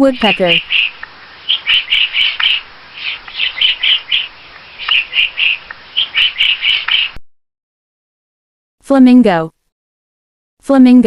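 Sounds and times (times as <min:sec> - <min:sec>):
woodpecker calling: 0:00.0 - 0:07.2.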